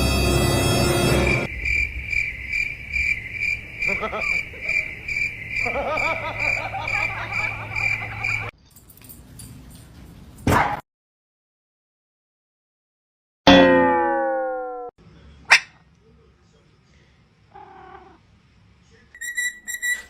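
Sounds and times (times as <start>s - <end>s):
wavering calls: 19.2s - 20.0s.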